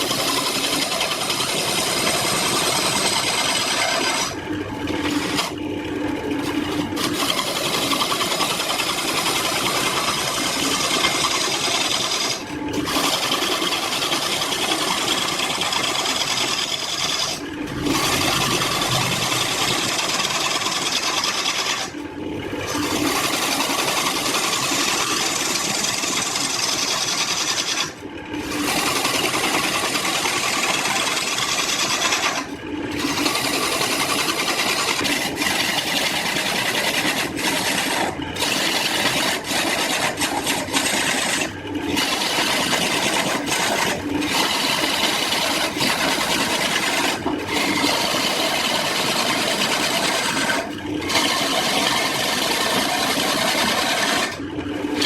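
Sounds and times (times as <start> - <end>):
tool rasping wood: 0.0 - 5.6, 6.4 - 22.0, 22.6 - 54.4.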